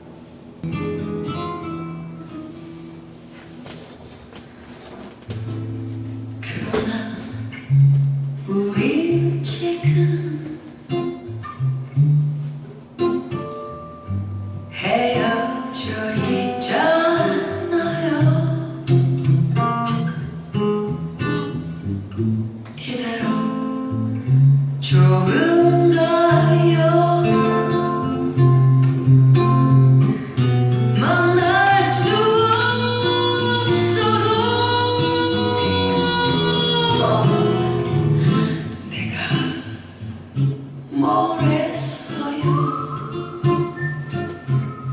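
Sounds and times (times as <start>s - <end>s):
acoustic guitar: 0.0s - 44.9s
person singing: 31.0s - 39.7s.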